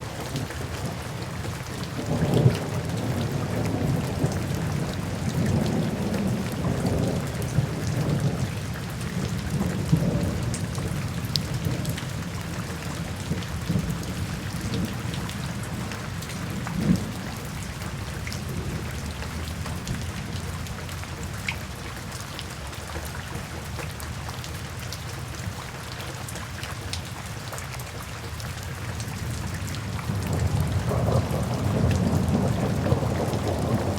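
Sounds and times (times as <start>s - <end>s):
steady rain: 0.0s - 33.9s
rolling thunder: 1.9s - 20.6s, 29.2s - 33.9s.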